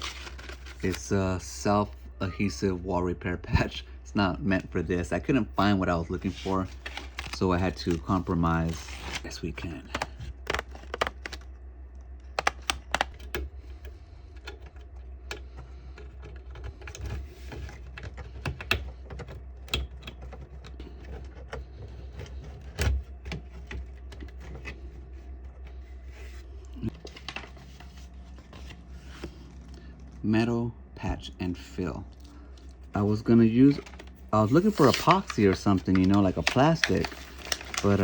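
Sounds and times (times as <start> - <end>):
low steady hum: 0.0 - 38.0
hands clicking and tapping on plastic: 12.3 - 17.1.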